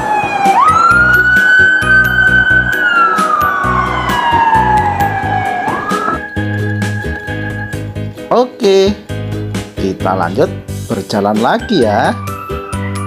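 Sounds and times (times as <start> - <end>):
toy siren wailing: 0.0 - 7.8, 12.0 - 13.0
background music with beat: 0.0 - 8.3, 8.9 - 13.0.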